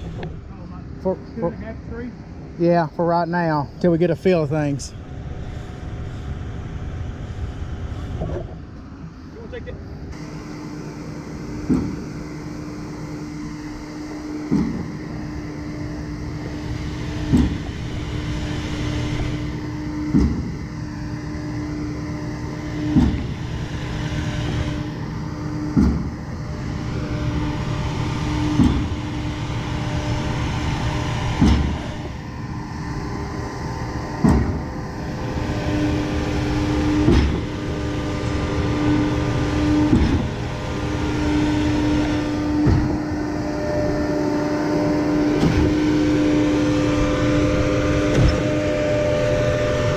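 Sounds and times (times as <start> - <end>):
concrete pump engine running: 0.0 - 49.9
pump clunk: 11.6 - 20.6, 22.5 - 33.5, 34.1 - 49.9.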